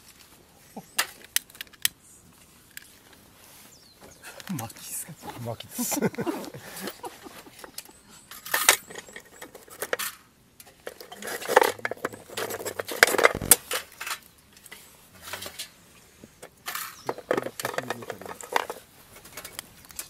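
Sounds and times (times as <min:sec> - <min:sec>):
cooking gear clinking: 0:05.4 - 0:15.7, 0:16.4 - 0:20.0.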